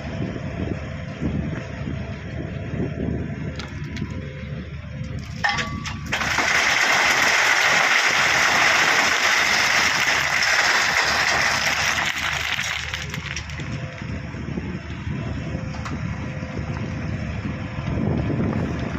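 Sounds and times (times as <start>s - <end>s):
diesel engine running: 0.0s - 18.9s
crushed stone pouring and rattling: 5.2s - 14.1s.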